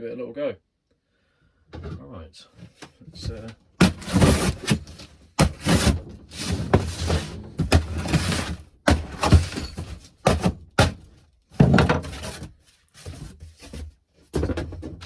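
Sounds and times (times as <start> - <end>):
cardboard packaging rustling: 3.2 - 13.9.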